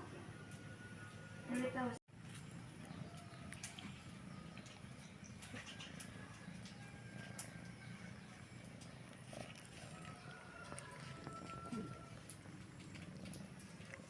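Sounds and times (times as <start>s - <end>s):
kitten purring: 8.4s - 14.0s.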